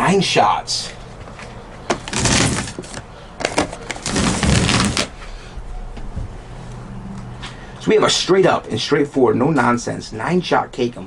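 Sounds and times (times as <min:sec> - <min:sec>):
dense rustle: 0:03.9 - 0:05.1.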